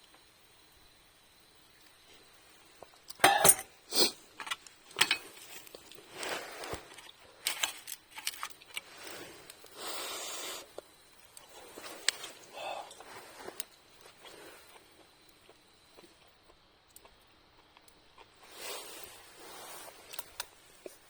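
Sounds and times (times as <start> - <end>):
short steady hiss: 8.9 - 13.5.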